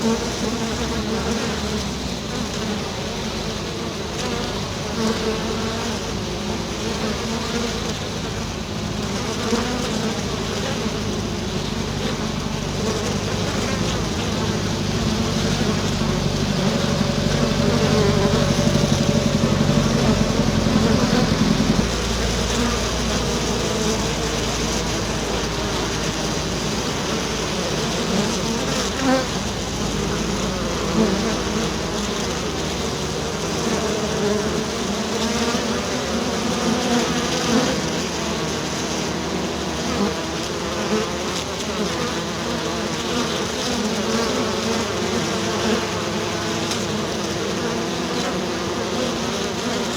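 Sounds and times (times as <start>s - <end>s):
swarm of bees buzzing: 0.0s - 49.9s.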